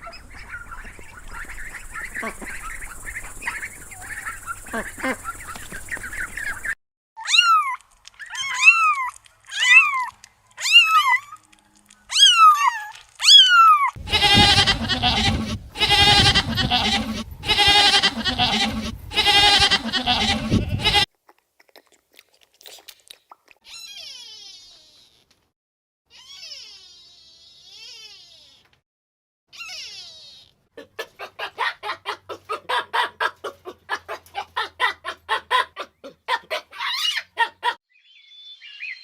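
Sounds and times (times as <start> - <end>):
long wavering animal cries: 7.2 - 11.4, 12.1 - 21.1, 23.7 - 25.2, 26.1 - 28.6, 29.6 - 30.6
short rising and falling animal calls: 14.0 - 21.1.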